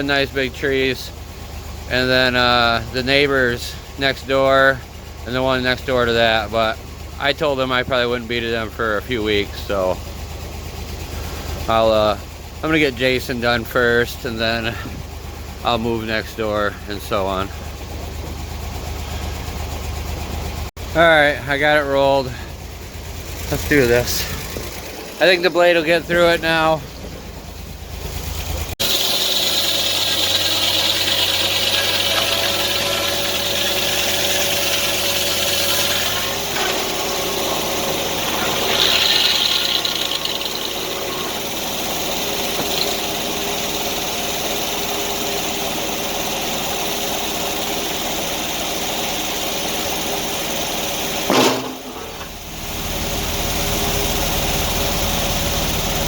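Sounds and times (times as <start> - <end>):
sawmill engine running: 0.0 - 56.0
saw blade cutting log: 28.8 - 46.2, 47.0 - 52.3.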